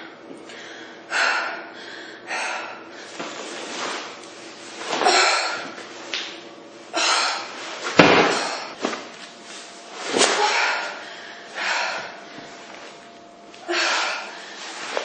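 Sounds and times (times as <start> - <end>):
exercise thumps: 4.8 - 6.4, 7.0 - 9.2
person exhaling heavily: 13.6 - 14.7.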